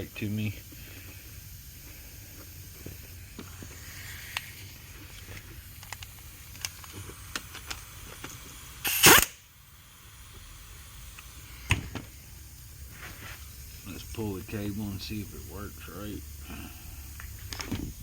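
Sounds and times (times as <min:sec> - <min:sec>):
short loud hiss: 0:06.9 - 0:10.3.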